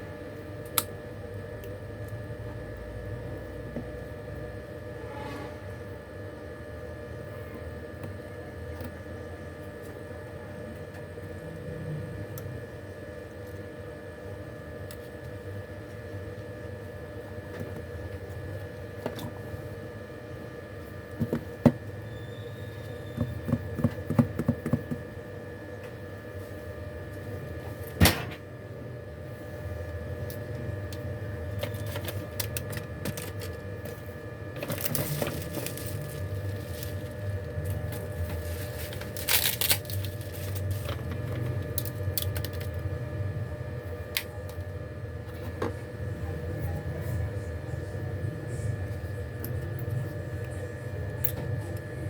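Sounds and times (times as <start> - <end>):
steady electrical hum: 0.0 - 52.0
scraping rustles: 34.6 - 41.0.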